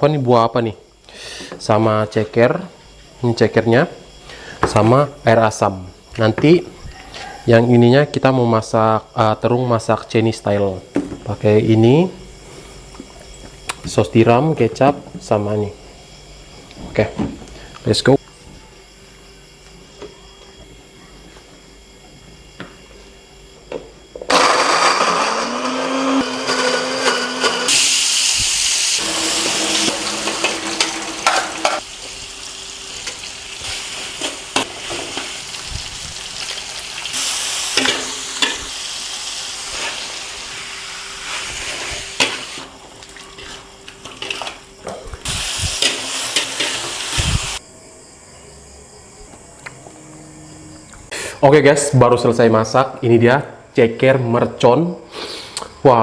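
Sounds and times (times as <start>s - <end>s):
food sizzling in a pan: 24.3s - 47.6s.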